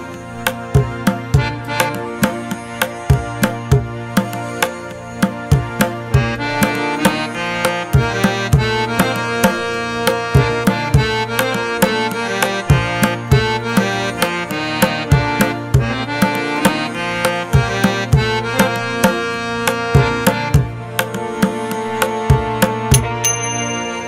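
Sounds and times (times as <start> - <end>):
instrumental music with drums: 0.0 - 24.0.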